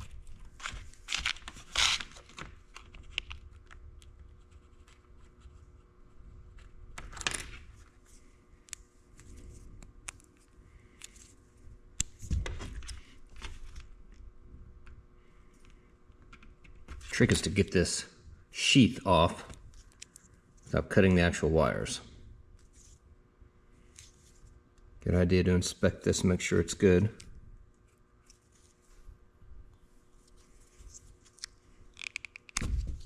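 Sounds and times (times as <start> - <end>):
sheath tearing and crinkling: 0.4 - 2.9.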